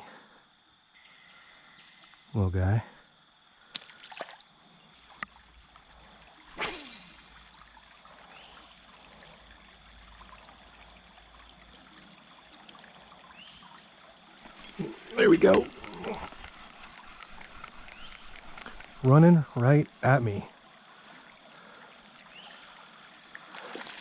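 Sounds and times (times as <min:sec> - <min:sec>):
creek water trickling: 0:00.1 - 0:24.0
light clicks: 0:14.5 - 0:19.1.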